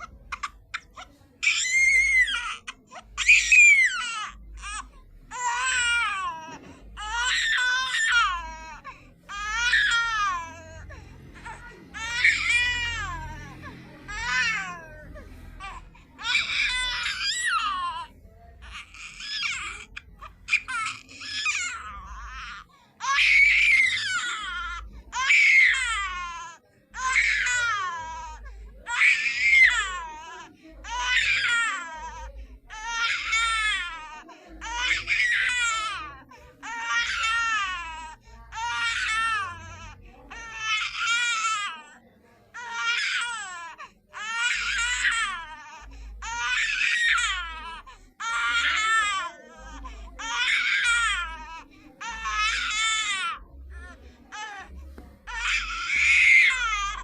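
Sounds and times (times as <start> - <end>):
baby crying: 0.0 - 41.8.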